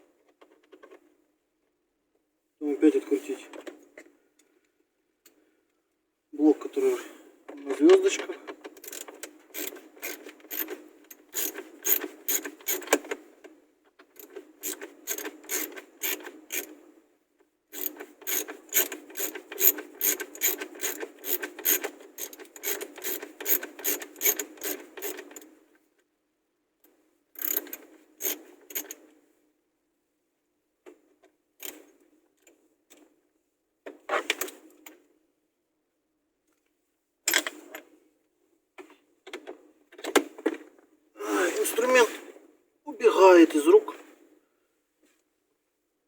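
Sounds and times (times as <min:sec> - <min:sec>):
hand ratchet clicking: 0:08.8 - 0:10.7, 0:11.3 - 0:12.9, 0:14.2 - 0:16.7, 0:17.8 - 0:25.2, 0:27.4 - 0:28.9.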